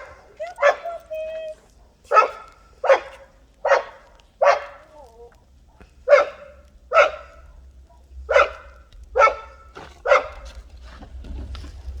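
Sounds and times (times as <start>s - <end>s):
puppy barking: 0.0s - 10.6s.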